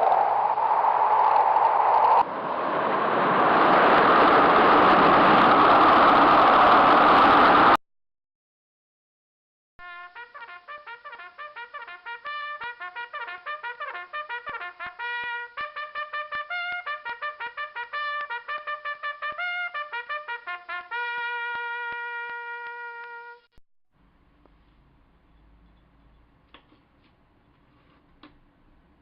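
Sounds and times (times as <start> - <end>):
trumpet playing quick melody: 9.8 - 23.6.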